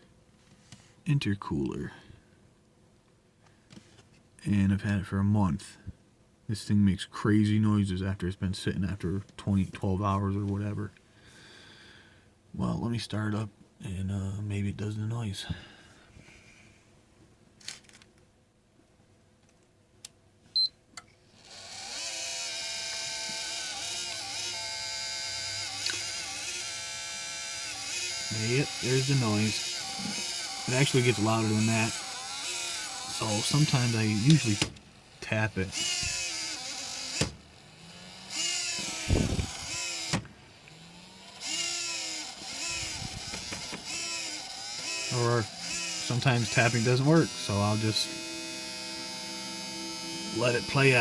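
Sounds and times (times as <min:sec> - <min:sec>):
cooling fans whirring and whining: 0:21.3 - 0:51.0.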